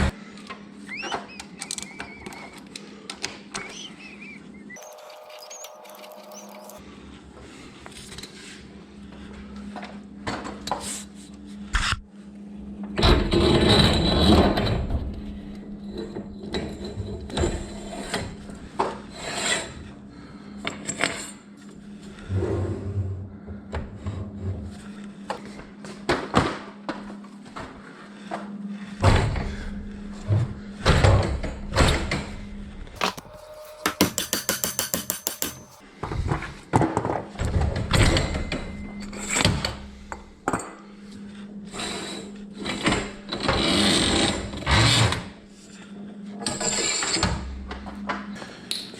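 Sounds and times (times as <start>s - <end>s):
steady low hum: 3.8s - 36.8s
metal scraping: 4.8s - 6.8s, 32.4s - 35.8s
hand tools knocking and clicking: 33.8s - 35.8s.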